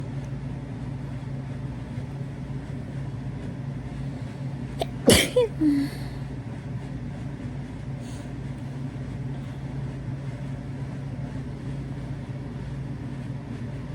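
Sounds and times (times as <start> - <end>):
person sneezing: 4.8 - 6.2.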